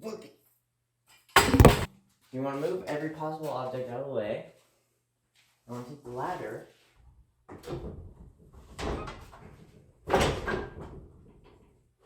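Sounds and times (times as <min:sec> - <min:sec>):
ladder knocking and scraping: 0:01.5 - 0:01.9.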